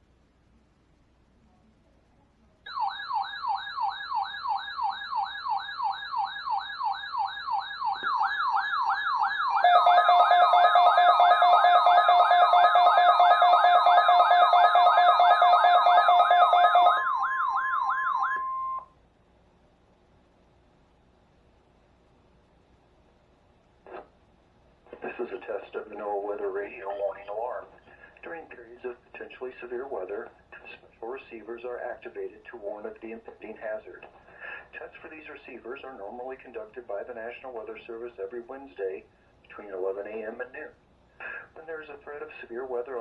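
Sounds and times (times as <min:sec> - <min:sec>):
steady alarm tone: 0:02.7 - 0:18.9
warbling siren alarm: 0:02.7 - 0:18.9.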